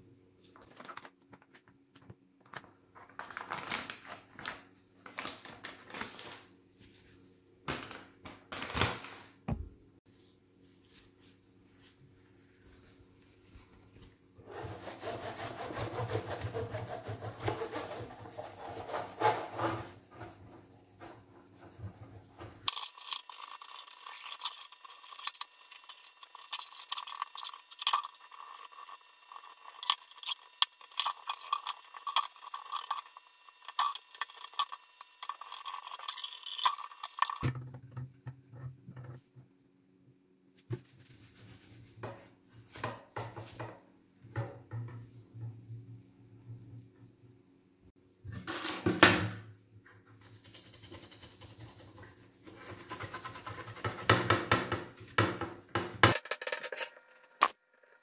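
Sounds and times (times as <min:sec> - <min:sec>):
hand rubbing on hard surface: 0:40.6 - 0:43.6
sharp clicks and scratches: 0:50.2 - 0:54.7.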